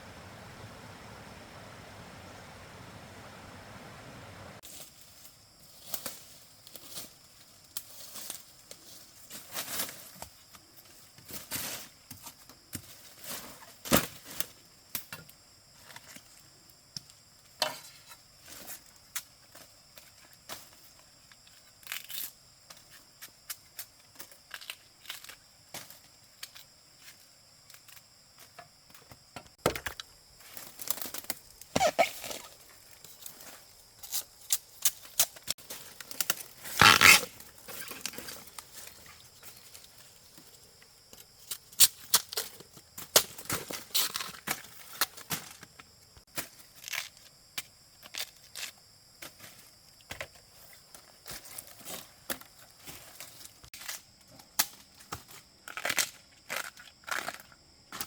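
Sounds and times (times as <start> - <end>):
dry plant material crackling: 30.4 - 40.4
loud tearing rip: 36.7 - 37.3.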